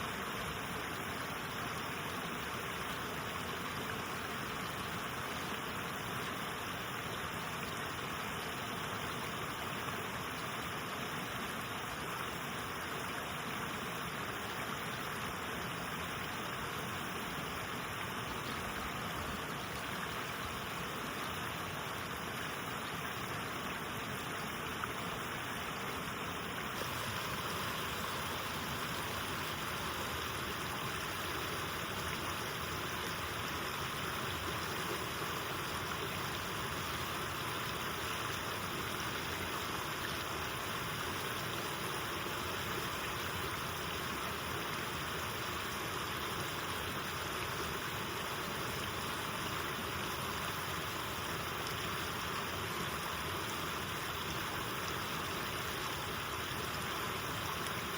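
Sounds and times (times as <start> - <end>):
rushing river water: 0.0 - 57.9.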